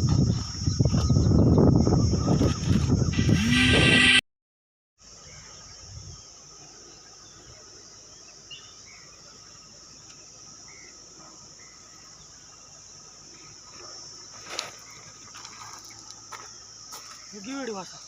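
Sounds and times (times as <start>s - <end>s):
crickets chorus: 0.0s - 4.2s, 5.0s - 18.0s.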